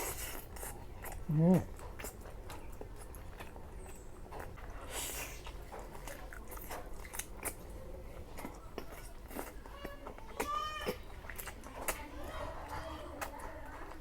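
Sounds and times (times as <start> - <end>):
person chewing and biting: 0.0 - 7.7, 8.3 - 9.6, 10.8 - 11.7.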